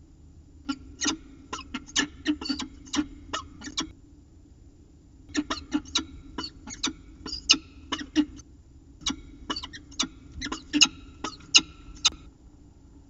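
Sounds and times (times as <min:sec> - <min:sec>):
animal clicking calls: 0:00.7 - 0:03.9, 0:05.3 - 0:08.4, 0:09.0 - 0:12.3.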